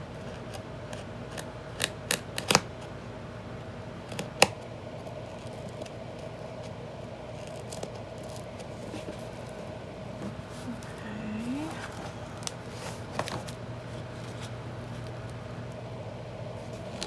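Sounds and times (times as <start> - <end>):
faint steady hum: 4.8 - 17.0.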